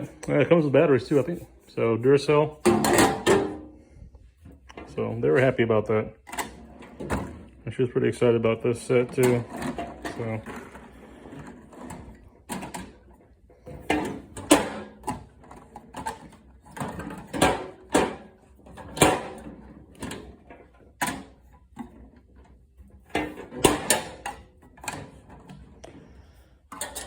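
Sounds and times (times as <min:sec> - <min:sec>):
hand tools clicking and knocking: 0:26.7 - 0:27.0.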